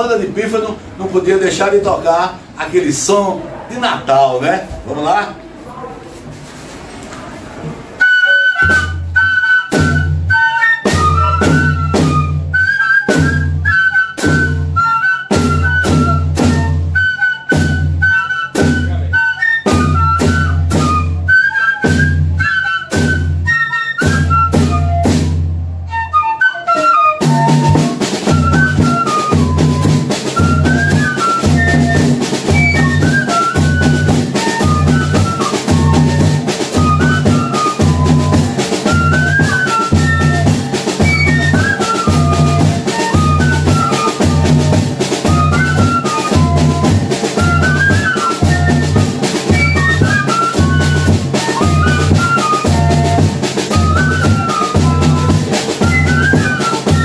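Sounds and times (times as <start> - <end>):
percussion: 6.5 - 57.0
fifes playing a melody: 26.4 - 57.0.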